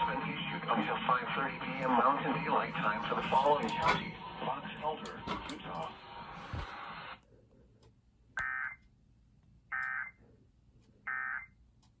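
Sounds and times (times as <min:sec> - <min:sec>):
broadcast audio: 0:00.0 - 0:07.2.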